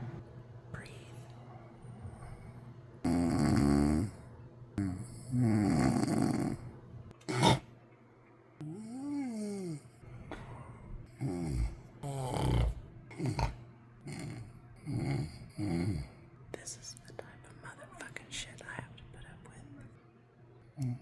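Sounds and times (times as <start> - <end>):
man snoring: 3.0 - 7.6, 8.6 - 10.0, 11.1 - 16.2.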